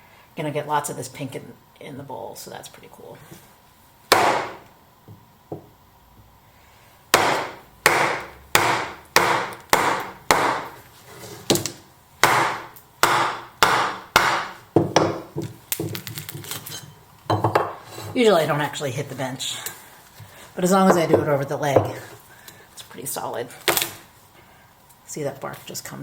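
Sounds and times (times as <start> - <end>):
axe chopping wood: 4.1 - 4.6, 7.1 - 10.8, 11.5 - 15.4.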